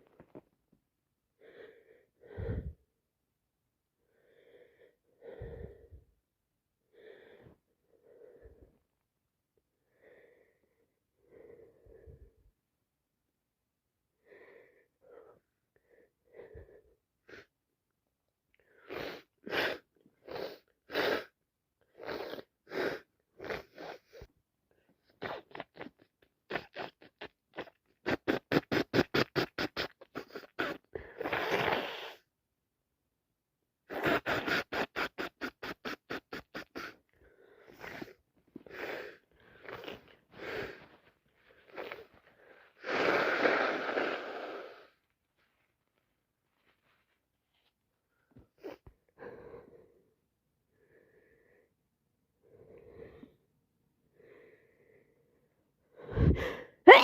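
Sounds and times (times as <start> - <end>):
quick gasping breaths: 4.1 - 6.1, 33.9 - 45.1, 55.9 - 57.0
person sneezing: 33.9 - 37.0, 56.1 - 57.0.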